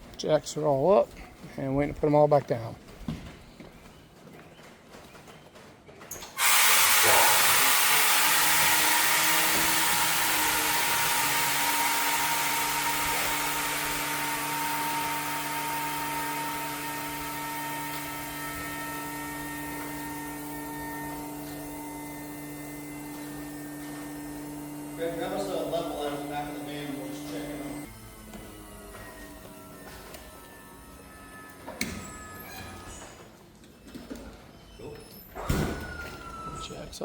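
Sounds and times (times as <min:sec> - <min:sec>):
jack motor whining: 0:06.2 - 0:33.4
hiss: 0:06.4 - 0:12.4.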